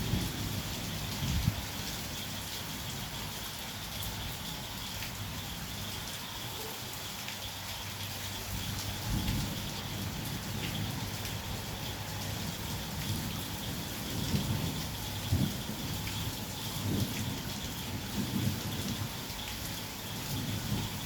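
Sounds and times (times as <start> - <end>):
low rumble of thunder: 0.0 - 3.4, 8.4 - 21.0
heavy rain falling: 0.0 - 21.0.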